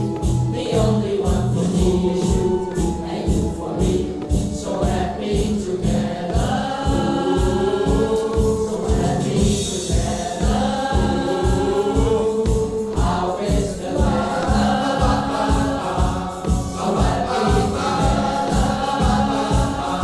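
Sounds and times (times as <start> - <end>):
group singing: 0.0 - 20.0
steady driving beat: 0.0 - 20.0.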